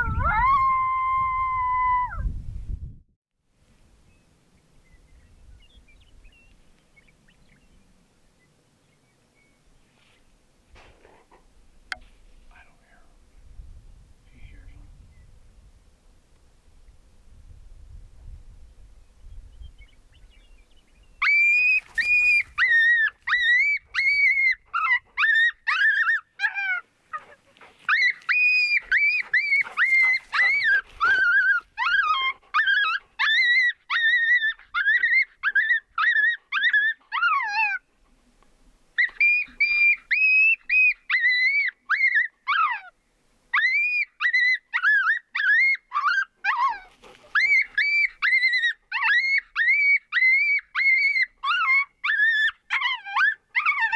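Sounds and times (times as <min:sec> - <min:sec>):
dog yelping: 0:21.2 - 0:37.9, 0:39.0 - 0:53.9.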